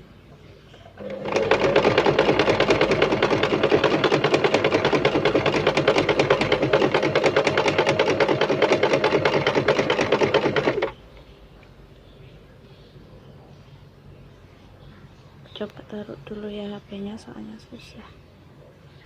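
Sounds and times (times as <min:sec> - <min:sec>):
sewing machine motor hum: 0:00.8 - 0:11.0
sewing machine stitching clatter: 0:01.0 - 0:11.0.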